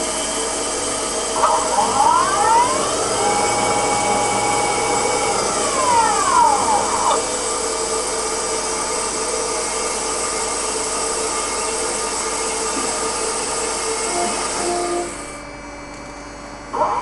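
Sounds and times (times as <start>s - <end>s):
bandsaw running: 1.4s - 11.3s.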